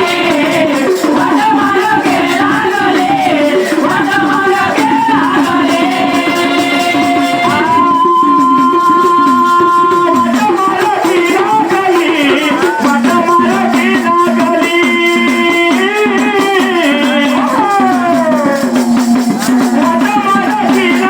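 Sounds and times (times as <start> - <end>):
devotional song melody: 0.0 - 14.6
rattling hand percussion: 0.0 - 21.0.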